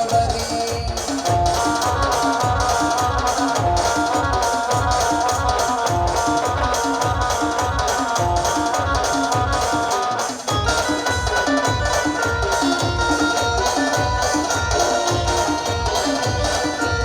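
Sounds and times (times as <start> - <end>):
band playing folk melody: 0.0 - 17.0
steady drum beat: 0.0 - 17.0.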